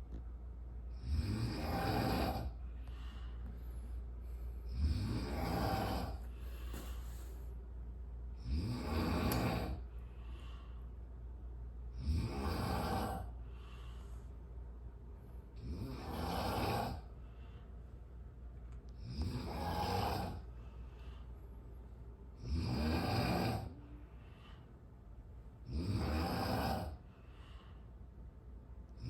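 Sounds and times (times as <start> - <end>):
quiet breathing: 0.0 - 29.0
person snoring loudly: 0.9 - 2.6, 4.7 - 6.3, 8.4 - 9.9, 12.0 - 13.4, 15.6 - 17.1, 19.0 - 20.5, 22.4 - 23.8, 25.7 - 27.0.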